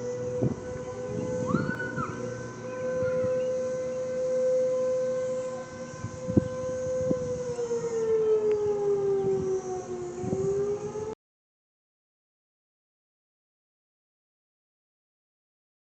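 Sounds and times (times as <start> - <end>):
tornado warning siren: 0.0 - 11.2.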